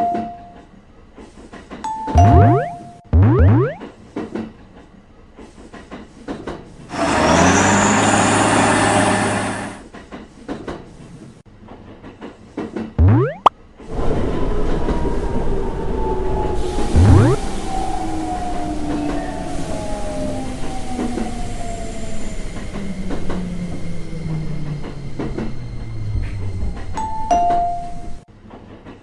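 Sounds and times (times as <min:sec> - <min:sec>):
held drifting tones: 0:13.0 - 0:13.5, 0:16.4 - 0:21.0
train passing: 0:13.9 - 0:28.8
rising sweep: 0:15.2 - 0:22.5.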